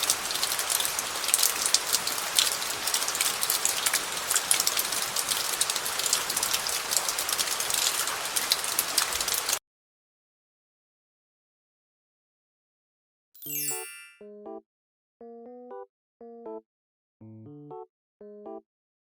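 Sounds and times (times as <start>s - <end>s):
rain falling on gravel: 0.0s - 9.6s.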